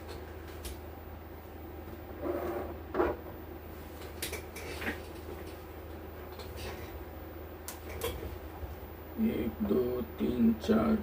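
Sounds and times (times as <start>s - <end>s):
low mains hum: 0.0s - 11.0s.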